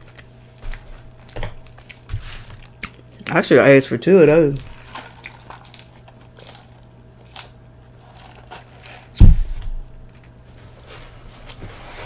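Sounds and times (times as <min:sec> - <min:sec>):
loud low thump: 0:09.2 - 0:10.0.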